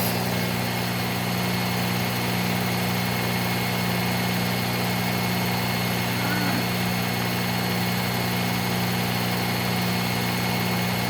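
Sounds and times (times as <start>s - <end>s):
knife sharpener motor humming: 0.0s - 1.2s.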